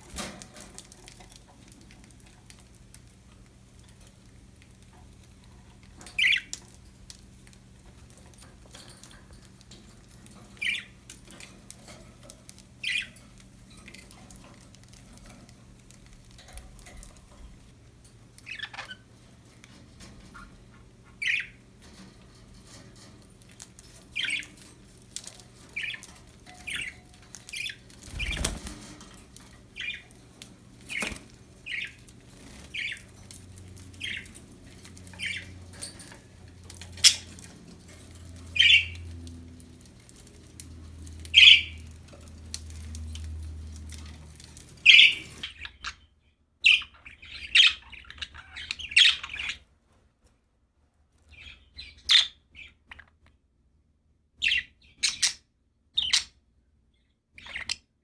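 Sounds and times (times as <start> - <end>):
budgies chirping: 5.5 - 6.8, 10.1 - 11.5, 12.5 - 13.2, 18.4 - 19.2, 20.2 - 21.6, 23.5 - 36.1, 36.7 - 37.5, 38.1 - 39.2, 41.1 - 42.1, 43.8 - 49.6, 51.3 - 53.1, 54.4 - 55.4, 57.4 - 57.8.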